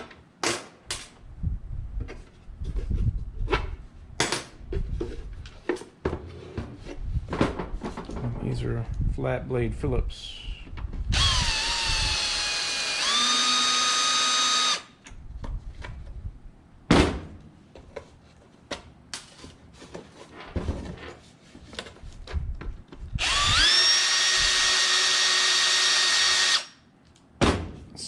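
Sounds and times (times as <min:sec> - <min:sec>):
cordless drill motor whining: 0:11.1 - 0:14.9, 0:23.2 - 0:26.8.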